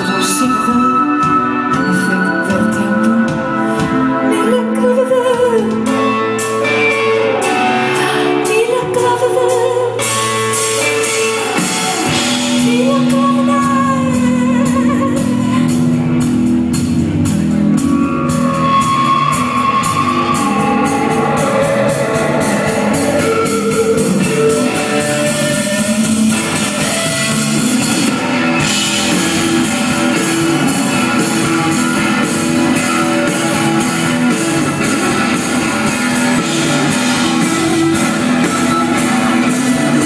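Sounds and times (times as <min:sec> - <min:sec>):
sustained guitar: 0:00.0 - 0:40.0
keyboard tones: 0:17.0 - 0:35.7.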